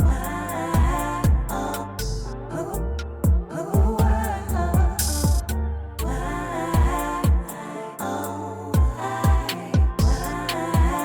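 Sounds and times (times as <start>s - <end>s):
hip-hop beat: 3.2s - 5.6s, 6.8s - 7.6s, 8.8s - 11.0s.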